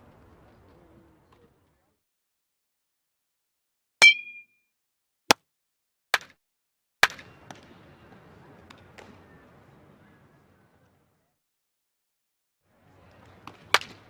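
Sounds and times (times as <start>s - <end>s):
bat hitting baseball: 4.0s - 4.4s, 13.4s - 14.0s.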